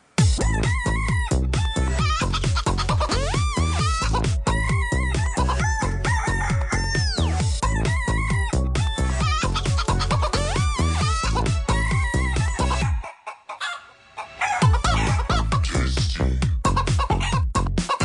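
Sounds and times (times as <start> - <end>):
techno dance music: 0.0 - 13.0, 14.6 - 18.0
kick-drum beat: 0.2 - 13.0, 14.6 - 18.0
sampled rooster crows: 5.6 - 7.3, 12.9 - 15.2
sampled chicken clucks: 12.7 - 15.6, 16.7 - 18.0.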